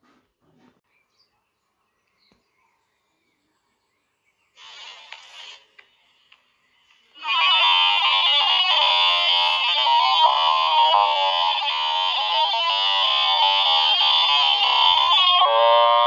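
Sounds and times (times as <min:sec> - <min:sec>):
loud distorted buzzing sound effect: 0:07.2 - 0:16.0.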